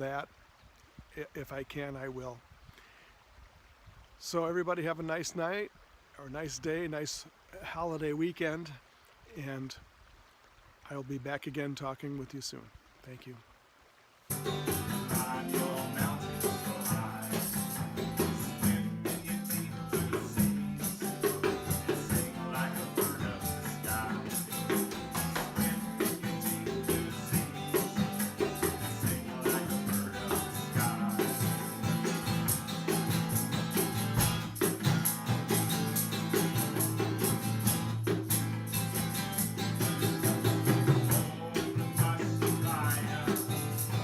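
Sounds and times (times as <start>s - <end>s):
bright high percussion ticking: 14.3s - 41.3s
bass notes: 14.3s - 43.2s.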